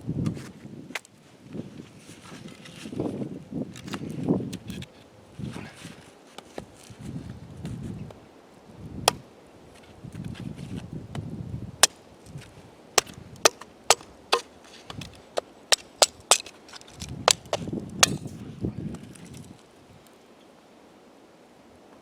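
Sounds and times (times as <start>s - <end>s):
axe chopping wood: 13.0s - 18.3s.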